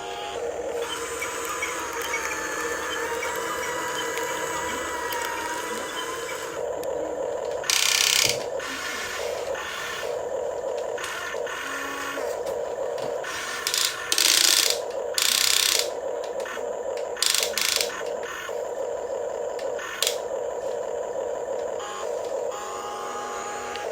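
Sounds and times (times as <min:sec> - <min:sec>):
rasping bursts: 0:00.0 - 0:06.7
toy excavator motors whining: 0:00.0 - 0:23.9.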